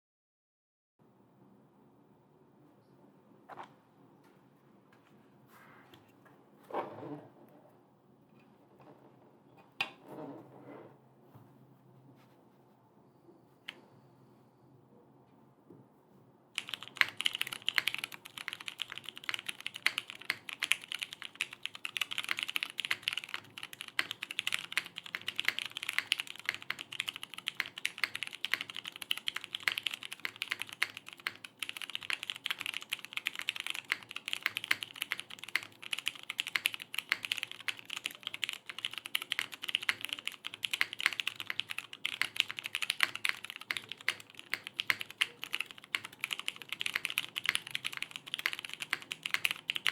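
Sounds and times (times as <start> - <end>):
mechanical keyboard typing: 16.6 - 49.9.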